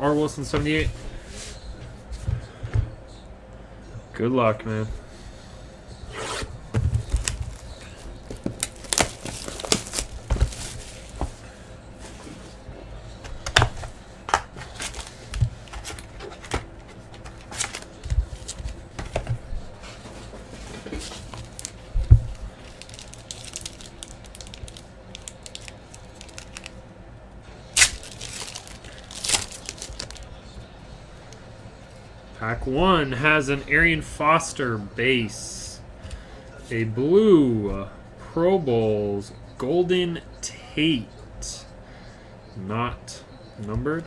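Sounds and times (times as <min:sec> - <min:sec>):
cards being handled: 0:04.9 - 0:26.8, 0:27.8 - 0:32.1
foil wrappers tearing and crinkling: 0:06.8 - 0:11.5, 0:13.3 - 0:19.3, 0:21.0 - 0:26.8, 0:27.8 - 0:30.3.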